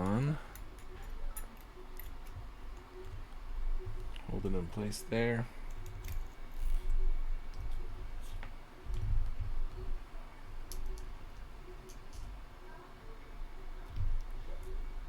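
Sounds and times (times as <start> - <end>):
small plastic and metal parts clicking: 0.0 - 3.3, 5.7 - 7.8, 10.7 - 11.1.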